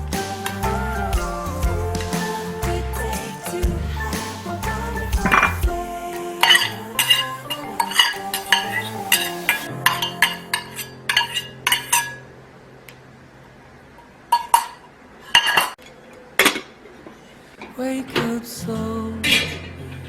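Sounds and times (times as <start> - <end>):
soft background music: 0.0 - 12.6.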